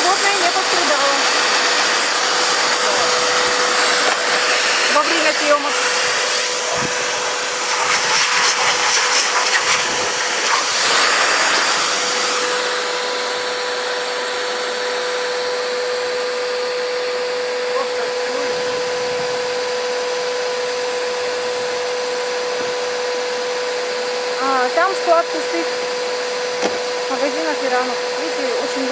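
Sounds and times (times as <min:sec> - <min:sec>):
vacuum blower motor whine: 0:00.0 - 0:28.9
rushing air: 0:01.2 - 0:13.0.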